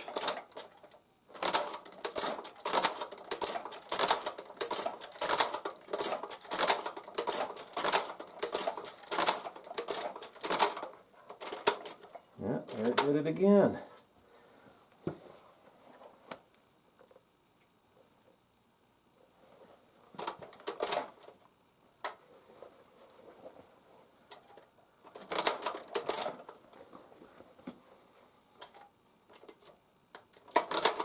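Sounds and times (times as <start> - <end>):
sewing machine clacking: 0.0 - 13.2, 20.2 - 21.3, 25.1 - 26.5, 30.4 - 31.0.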